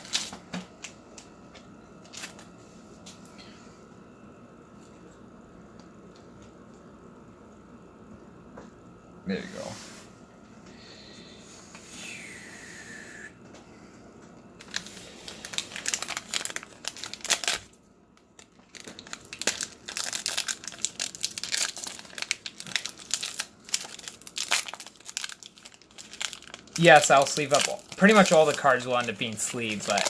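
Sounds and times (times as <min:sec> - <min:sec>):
plastic packaging crinkling: 0:00.0 - 0:01.0, 0:14.6 - 0:30.0.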